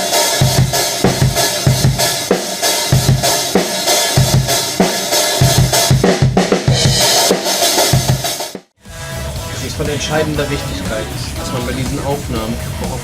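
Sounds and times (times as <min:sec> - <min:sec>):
cymbals: 0:00.0 - 0:13.0
kick drum hits: 0:00.4 - 0:02.1.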